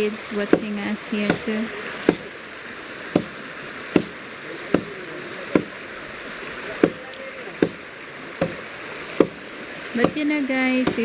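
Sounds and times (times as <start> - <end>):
flowing river rushing: 0.0 - 11.0
axe striking log: 0.5 - 2.4, 3.1 - 5.8, 6.8 - 10.2.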